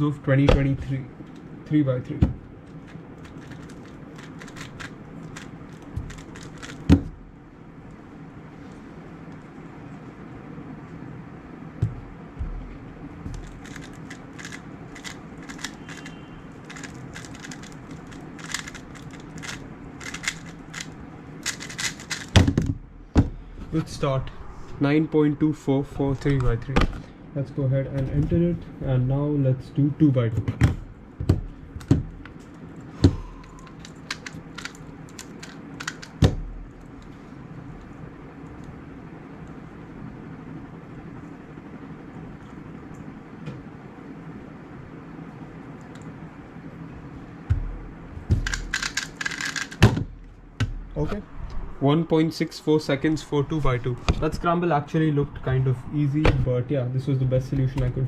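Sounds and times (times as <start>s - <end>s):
low hum: 0.0s - 30.0s, 30.8s - 58.0s
puzzle cube turning clicks: 2.7s - 6.9s, 13.3s - 22.4s, 33.4s - 36.2s, 48.4s - 49.8s.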